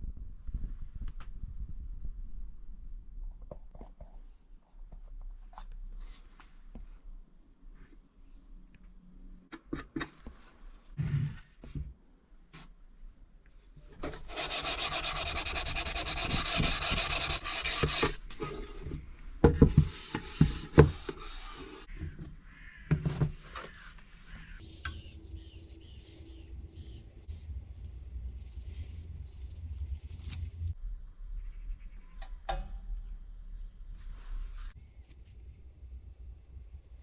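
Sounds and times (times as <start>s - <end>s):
sandpaper scrubbing on wood: 14.3s - 18.2s.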